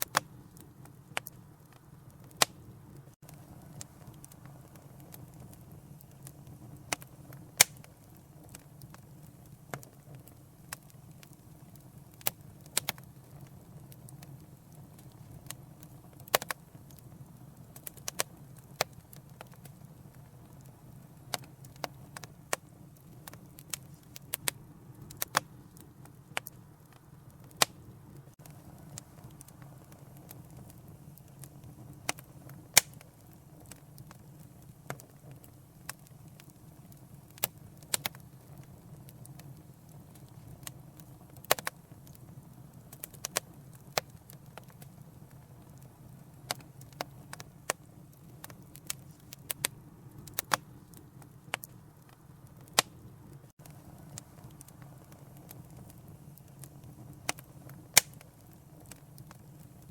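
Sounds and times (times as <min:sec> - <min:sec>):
wood fire crackling and popping: 0:00.0 - 0:59.9.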